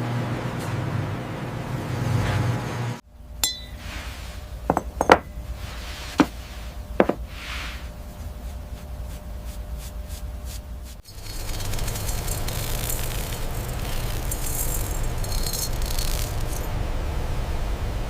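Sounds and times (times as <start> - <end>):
short glassy ring: 3.4 - 4.1, 11.1 - 16.7.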